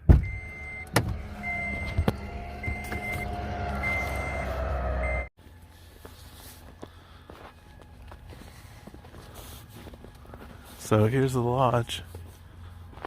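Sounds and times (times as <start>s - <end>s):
car engine running: 0.0s - 10.8s
high electronic warning beeps: 0.2s - 5.3s.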